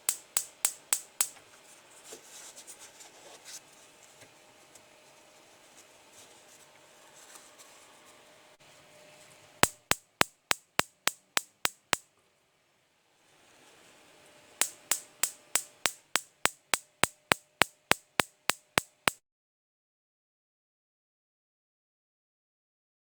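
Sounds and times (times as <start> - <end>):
stove spark igniter clicking: 0.0 - 1.4, 9.6 - 12.0, 14.6 - 19.2.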